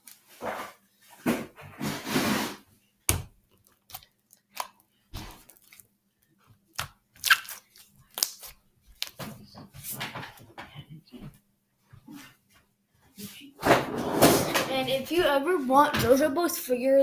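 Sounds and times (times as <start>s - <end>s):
small objects crackling and tapping: 6.8s - 10.3s.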